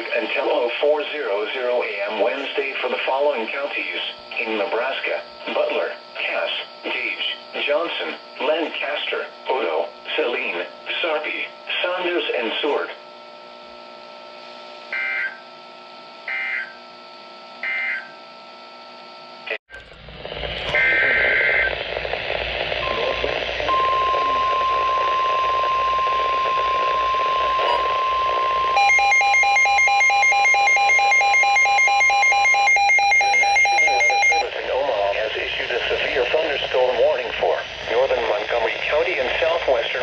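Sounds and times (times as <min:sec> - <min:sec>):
radio static: 0:00.0 - 0:13.1, 0:19.5 - 0:40.0
faint hum: 0:00.0 - 0:40.0
rapidly pulsing electronic alarm: 0:14.9 - 0:15.5, 0:16.2 - 0:16.9, 0:17.6 - 0:18.2, 0:20.5 - 0:21.8, 0:22.8 - 0:34.5
steady warning alarm tone: 0:14.9 - 0:15.5, 0:16.2 - 0:17.0, 0:17.6 - 0:18.2, 0:22.8 - 0:34.5.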